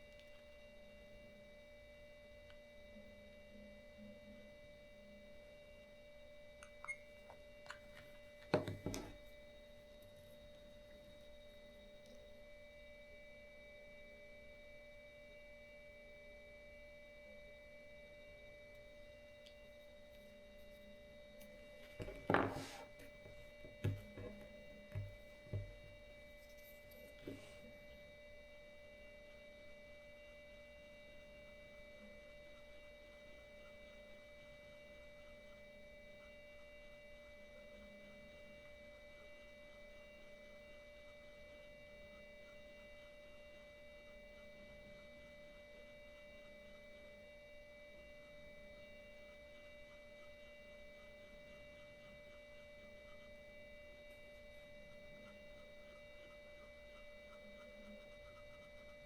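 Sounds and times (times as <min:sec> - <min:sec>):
faint electronic whine: 0:00.0 - 0:59.0.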